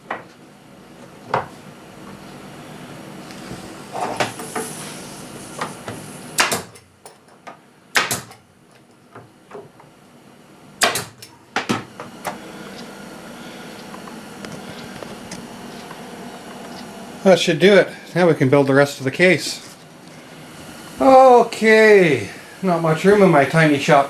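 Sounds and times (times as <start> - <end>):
sharp knocks on plywood: 8.0 - 8.3.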